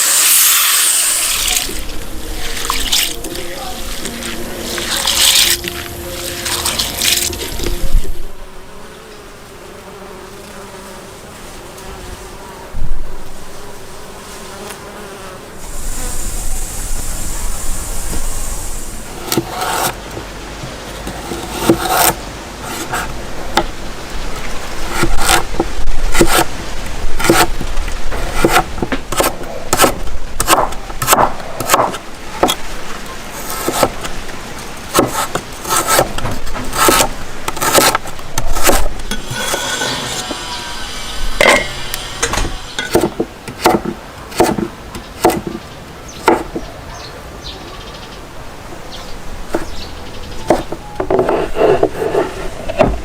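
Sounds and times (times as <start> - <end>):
high hiss: 0.0 - 8.9, 15.5 - 19.8, 39.0 - 43.0.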